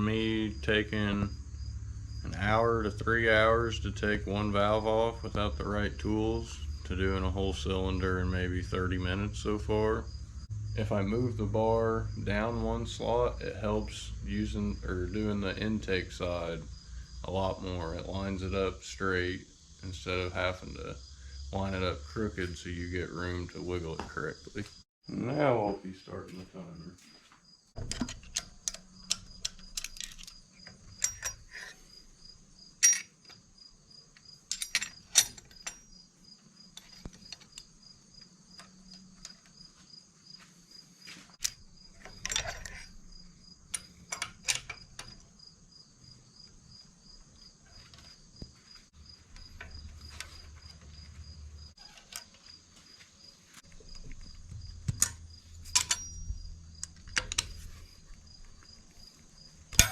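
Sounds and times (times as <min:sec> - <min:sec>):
metallic tool clicks and clinks: 0:31.0 - 0:31.8, 0:32.8 - 0:33.2, 0:34.5 - 0:35.9, 0:55.0 - 0:57.6.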